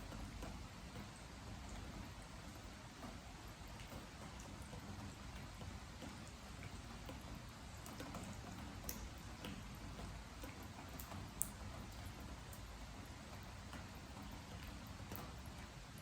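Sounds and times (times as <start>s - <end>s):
drops dripping on wooden deck: 0.0s - 16.0s
rain falling: 0.0s - 16.0s.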